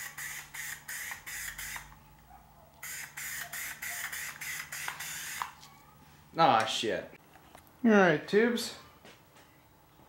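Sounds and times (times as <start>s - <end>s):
spray paint can hissing: 0.0s - 1.8s, 2.8s - 5.5s.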